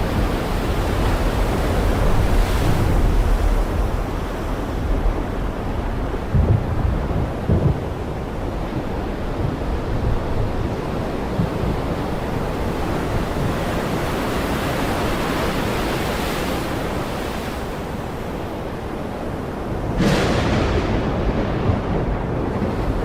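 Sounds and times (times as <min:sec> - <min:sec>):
heavy rain pouring: 0:19.6 - 0:23.0.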